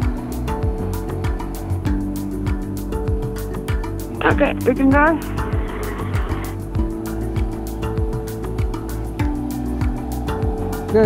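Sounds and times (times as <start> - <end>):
deep kick drum: 0.0 - 10.8
sustained held notes: 4.1 - 6.8.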